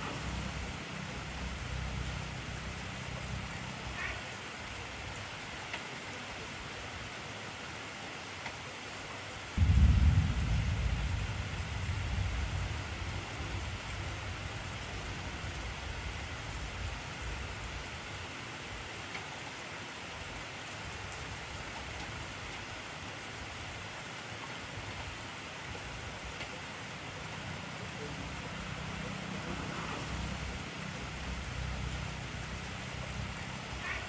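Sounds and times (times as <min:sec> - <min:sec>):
heavy rain falling: 0:00.0 - 0:34.0
thunder clap rumbling: 0:09.6 - 0:16.9.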